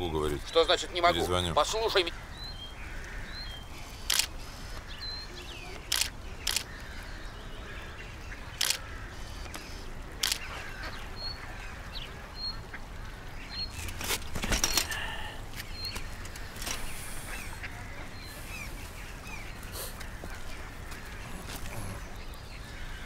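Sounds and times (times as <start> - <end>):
birds chirping: 0.0 - 23.0
sharp clicks: 4.1 - 4.4, 5.8 - 6.8, 8.6 - 8.8, 9.4 - 10.5.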